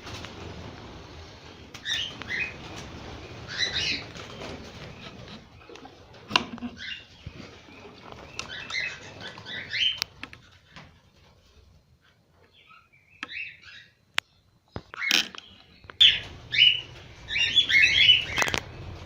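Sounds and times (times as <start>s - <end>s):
cockatiels chirping: 6.7s - 10.1s, 15.9s - 18.6s.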